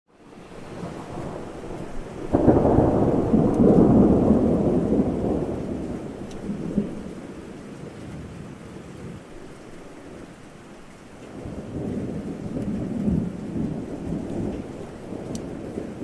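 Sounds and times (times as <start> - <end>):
steady rain: 0.1 - 16.0
thunder rumbling: 0.2 - 16.0.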